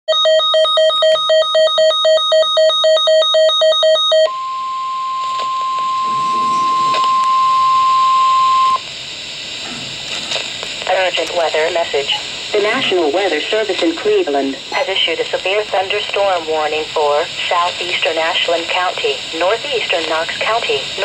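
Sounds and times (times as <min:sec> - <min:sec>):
steady alarm tone: 0:00.1 - 0:10.2, 0:11.0 - 0:21.0
rapid electronic beeping: 0:05.8 - 0:08.8
radio hiss: 0:06.0 - 0:21.0.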